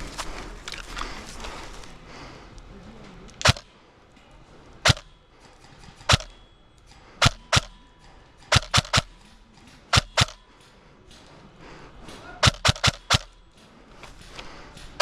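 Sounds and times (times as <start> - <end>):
airsoft gun firing shots: 3.4 - 3.6, 4.8 - 5.1, 6.0 - 6.3, 7.2 - 7.8, 8.4 - 9.1, 9.9 - 10.4, 12.4 - 13.4.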